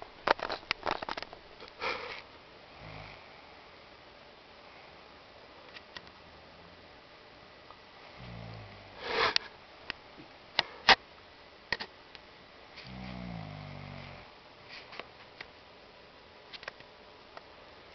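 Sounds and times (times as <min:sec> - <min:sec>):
low rattling snore: 0:08.0 - 0:09.4, 0:12.8 - 0:14.3.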